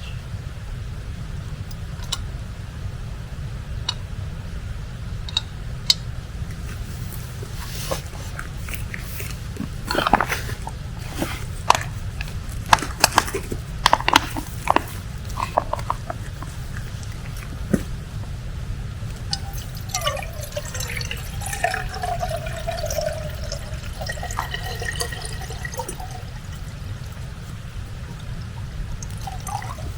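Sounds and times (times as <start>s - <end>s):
steady low rumble: 0.0s - 29.9s
cooking gear clicks and rustles: 6.5s - 18.0s.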